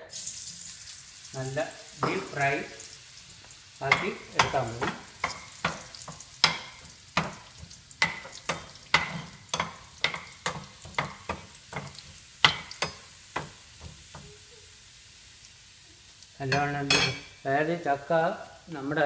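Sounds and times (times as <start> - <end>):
rind sizzling in hot oil: 0.0 - 19.0
spoon knocking against pan: 3.9 - 14.3.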